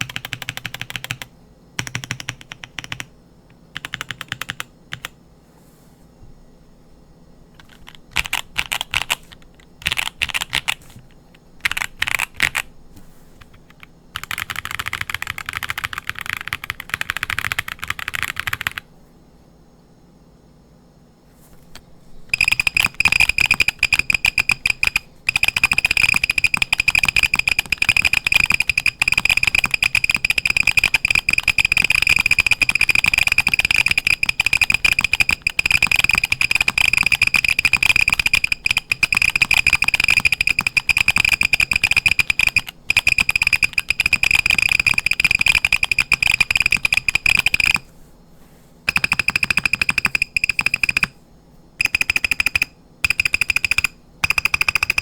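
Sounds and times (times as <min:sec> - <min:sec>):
high keyboard beep: 0:22.3 - 0:47.8, 0:48.9 - 0:51.1, 0:51.8 - 0:55.0
mechanical keyboard key clicks: 0:22.4 - 0:47.8, 0:48.9 - 0:51.1, 0:51.8 - 0:55.0.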